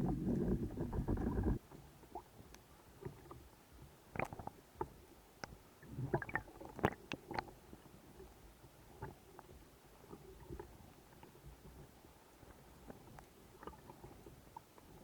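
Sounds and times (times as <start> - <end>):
low underwater rumble: 0.0 - 1.6
sharp clicks and crackles underwater: 0.0 - 3.4, 4.1 - 7.9, 12.4 - 15.0.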